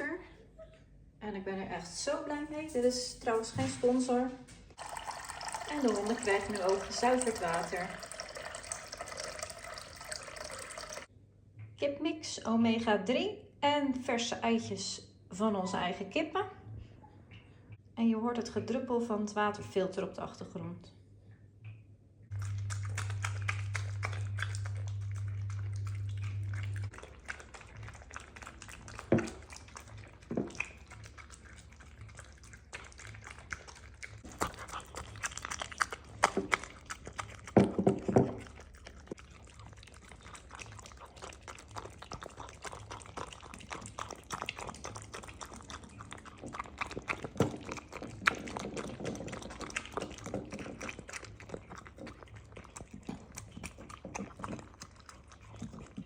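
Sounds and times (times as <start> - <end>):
dogs eating from bowls: 4.7 - 11.1, 22.3 - 56.0
water filter dripping: 4.8 - 11.1, 22.3 - 34.5
steady low hum: 22.3 - 56.0.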